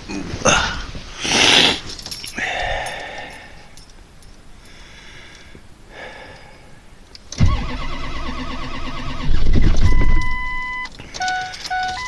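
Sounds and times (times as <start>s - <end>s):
diesel engine starter cranking: 7.2s - 12.0s.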